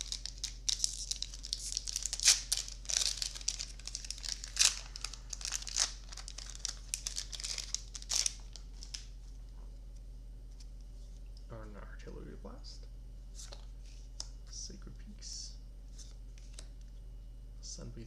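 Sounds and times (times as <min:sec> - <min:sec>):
plastic wrapper crinkling: 0:00.0 - 0:09.1.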